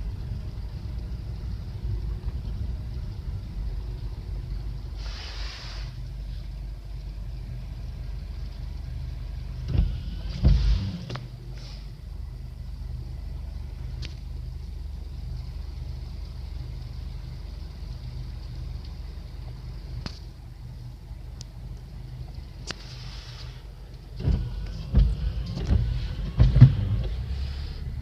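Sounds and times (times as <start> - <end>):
car engine and road rumble: 0.0 - 28.0
loud thumps: 9.7 - 11.3, 24.2 - 27.2.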